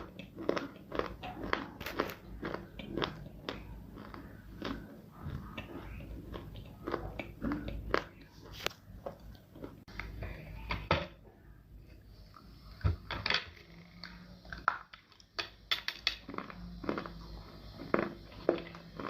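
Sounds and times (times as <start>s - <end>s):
crunchy chewing: 0.0s - 10.2s, 16.0s - 19.0s.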